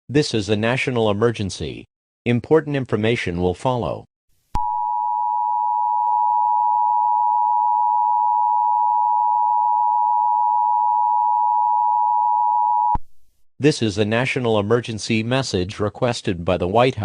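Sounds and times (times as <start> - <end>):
two-tone alarm tone: 4.6 - 13.0.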